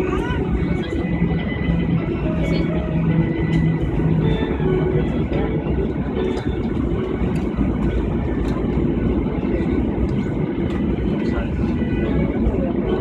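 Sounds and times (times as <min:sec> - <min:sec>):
airliner cabin rumble and hum: 0:00.0 - 0:13.0.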